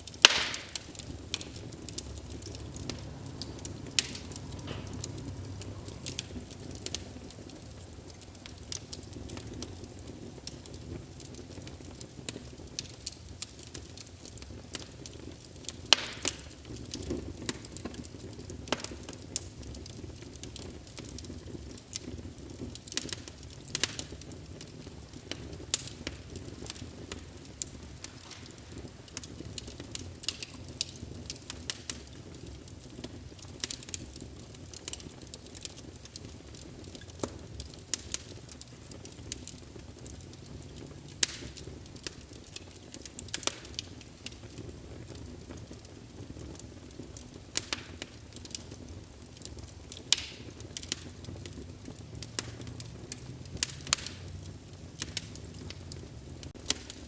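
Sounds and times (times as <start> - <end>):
wood fire crackling and popping: 0.0 - 57.0
low steady rumble: 0.7 - 10.4.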